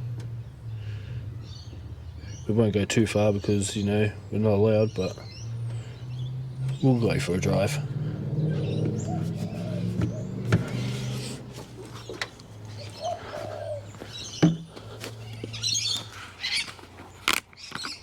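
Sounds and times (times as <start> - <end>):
birds chirping: 0.0 - 18.0
sharp knocks: 14.4 - 14.7.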